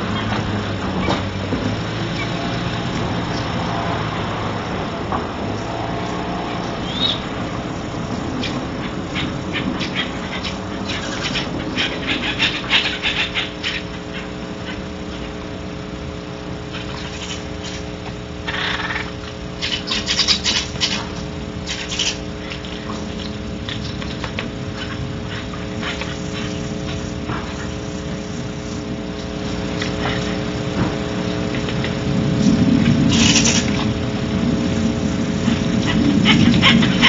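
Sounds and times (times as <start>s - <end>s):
steady low hum: 0.0s - 37.0s
owl hiss: 32.9s - 33.8s.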